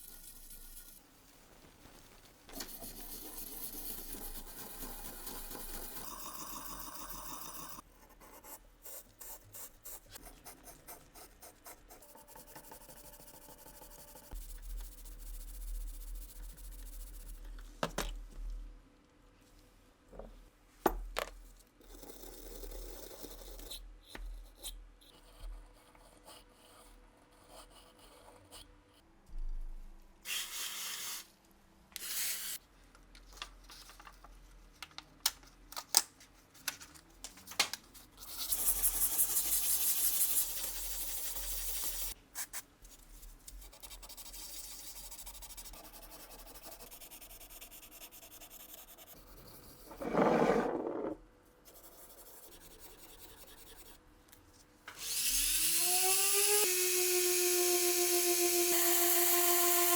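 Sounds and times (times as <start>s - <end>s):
filing strokes: 2.6s - 17.2s.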